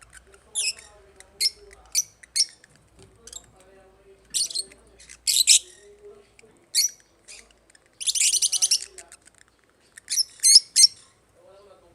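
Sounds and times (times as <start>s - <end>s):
lovebirds chirping: 0.0s - 11.9s.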